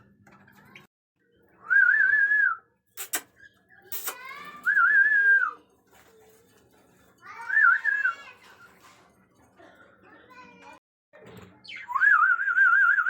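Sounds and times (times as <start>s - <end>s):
sharp clicks: 3.0s - 3.3s.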